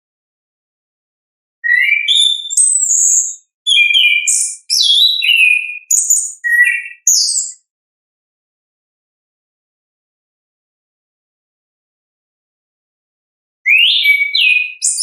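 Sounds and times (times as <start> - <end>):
thrush singing whistled phrases: 1.6 - 7.6, 13.7 - 15.0.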